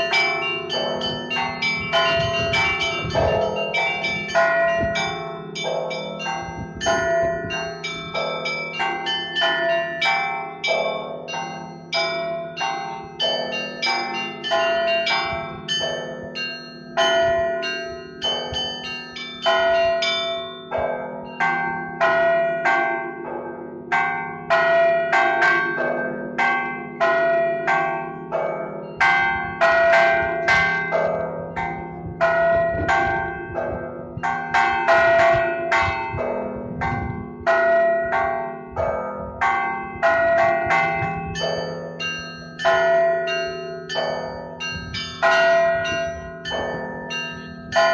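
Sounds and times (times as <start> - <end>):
deep church bells humming: 0.0 - 47.9
high church bells striking: 0.0 - 47.9.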